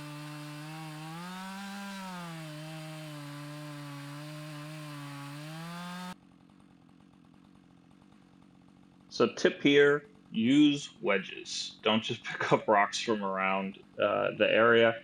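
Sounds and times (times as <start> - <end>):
chainsaw cutting a log: 0.0 - 11.0, 13.4 - 14.3.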